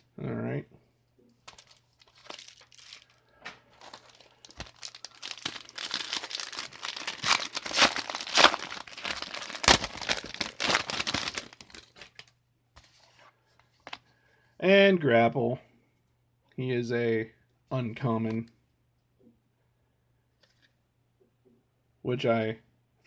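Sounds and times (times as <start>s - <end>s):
foil pack tearing and crinkling: 1.5s - 3.2s, 3.8s - 12.3s
foil wrapper snapping: 3.8s - 12.3s.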